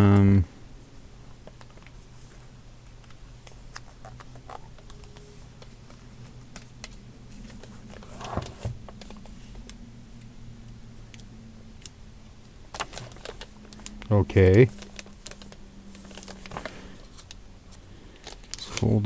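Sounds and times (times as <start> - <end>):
low electrical hum: 0.0 - 19.0.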